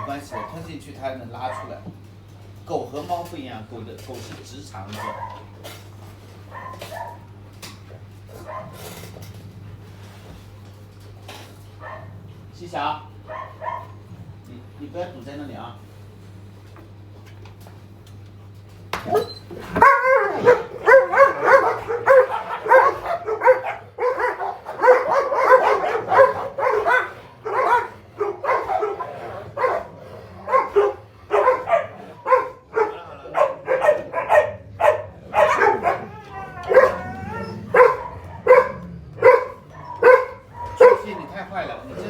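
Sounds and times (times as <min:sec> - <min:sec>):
dogs barking: 0:00.0 - 0:03.2, 0:04.6 - 0:14.5, 0:18.9 - 0:42.0
dog howling: 0:13.2 - 0:14.0, 0:19.0 - 0:41.6.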